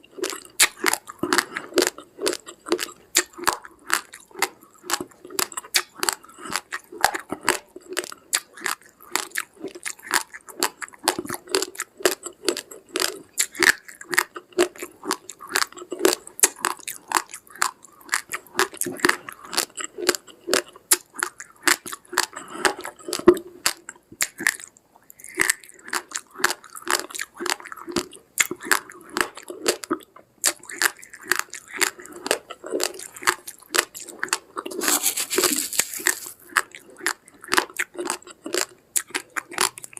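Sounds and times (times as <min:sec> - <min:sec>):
raw rice crunching: 0:34.7 - 0:36.6.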